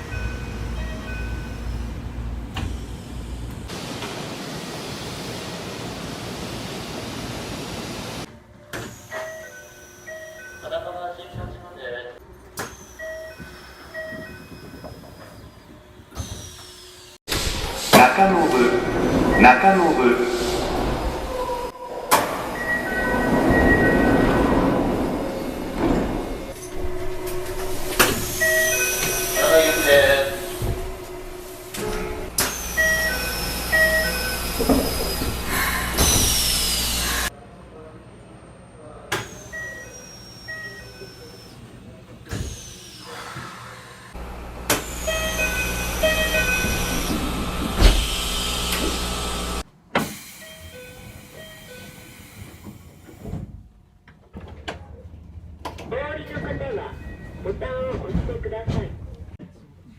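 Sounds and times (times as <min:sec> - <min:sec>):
train door chime beeps: 0:00.0 - 0:01.8, 0:09.1 - 0:11.1, 0:12.9 - 0:15.0, 0:19.1 - 0:20.0, 0:22.1 - 0:35.4, 0:39.4 - 0:41.3, 0:45.0 - 0:47.7, 0:50.1 - 0:52.6, 0:56.3 - 0:57.5
train rumble: 0:00.0 - 0:08.4, 0:17.3 - 0:37.9, 0:43.4 - 0:49.6
two-note door chime: 0:28.4 - 0:30.6.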